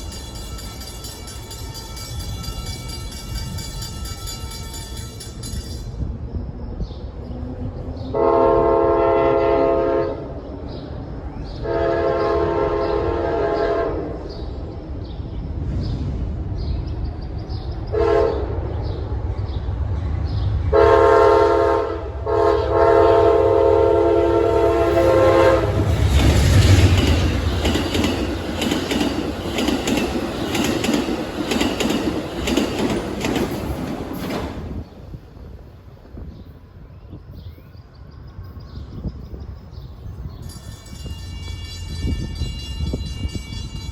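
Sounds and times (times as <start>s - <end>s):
wheels clacking over rail joints: 0.0s - 6.1s, 24.2s - 35.3s
train rumbling past: 0.0s - 43.9s
locomotive air horn blasts: 8.2s - 10.2s, 11.6s - 14.0s, 18.0s - 18.5s, 20.7s - 26.0s.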